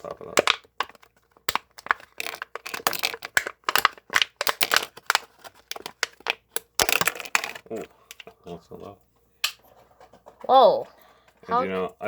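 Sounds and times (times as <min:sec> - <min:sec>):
small plastic parts clicking: 0:00.0 - 0:08.3.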